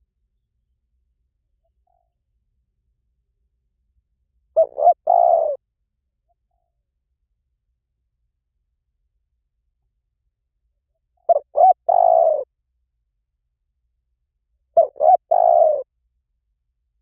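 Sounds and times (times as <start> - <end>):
dove cooing: 4.6 - 5.6, 11.3 - 12.5, 14.8 - 15.9.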